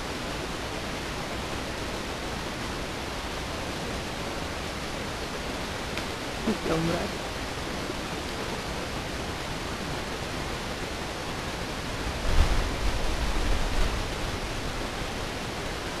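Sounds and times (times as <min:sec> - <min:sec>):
recorder hiss: 0:00.0 - 0:16.0.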